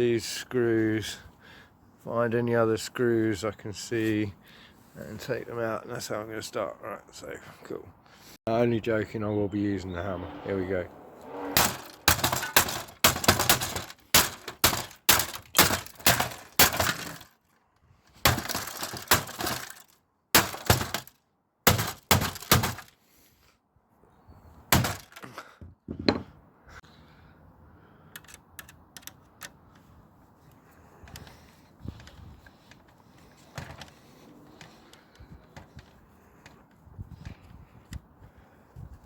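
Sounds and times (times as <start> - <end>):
hammer breaking plastic casing: 12.1 - 17.3, 18.2 - 19.8, 20.4 - 21.1, 21.7 - 22.9
loose pieces clattering: 12.1 - 17.4, 18.3 - 21.1.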